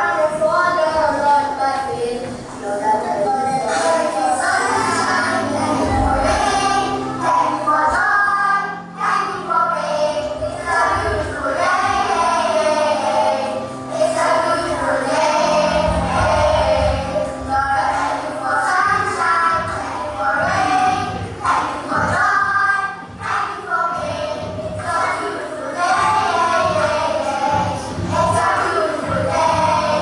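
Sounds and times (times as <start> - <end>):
children singing: 0.0 - 30.0
musical accompaniment: 0.0 - 30.0.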